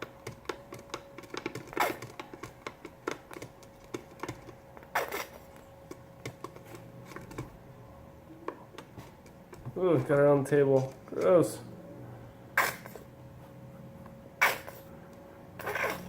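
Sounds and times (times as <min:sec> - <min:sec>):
spoon scraping against cup: 0:15.6 - 0:16.0.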